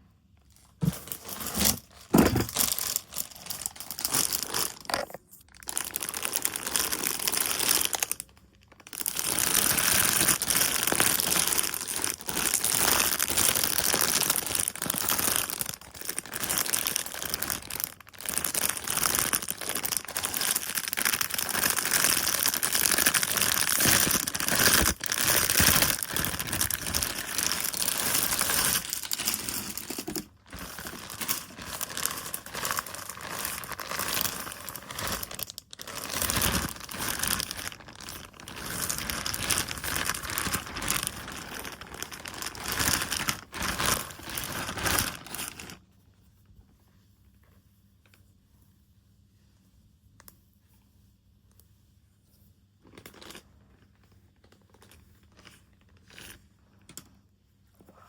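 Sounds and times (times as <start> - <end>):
plastic packaging crinkling: 0.5 - 45.8.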